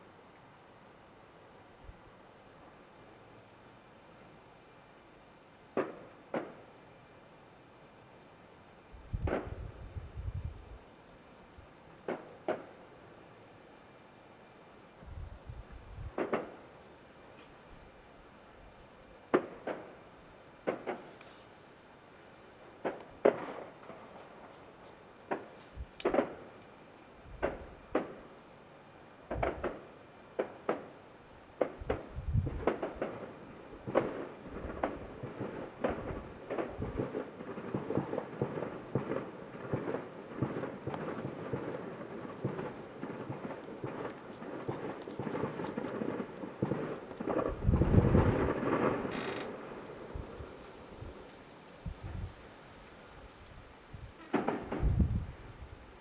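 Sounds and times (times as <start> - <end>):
distant fireworks bangs: 9.2 - 9.7, 16.1 - 16.6, 20.6 - 21.4, 22.8 - 24.5, 25.3 - 26.6, 27.4 - 28.2, 29.3 - 31.0, 31.6 - 51.3, 54.2 - 55.3.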